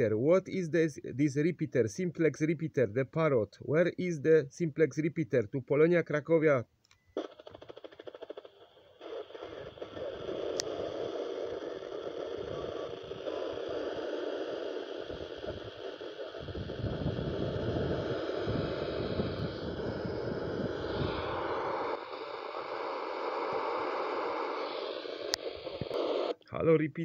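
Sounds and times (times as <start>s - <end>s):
radio static: 7.2s - 26.4s.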